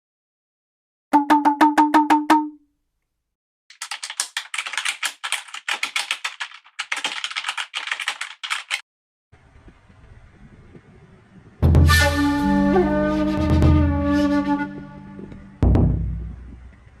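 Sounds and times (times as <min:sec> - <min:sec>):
rapid dense clicking: 0:03.7 - 0:08.8.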